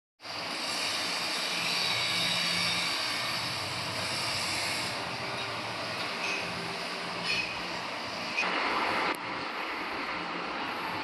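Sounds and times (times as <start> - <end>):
metal lathe turning a shaft: 0.3 - 8.5.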